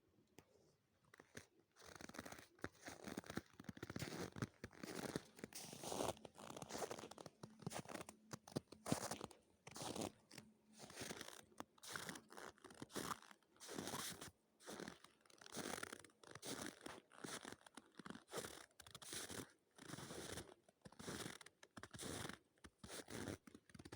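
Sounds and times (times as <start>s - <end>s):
footsteps crunching in frozen snow: 1.3s - 20.4s.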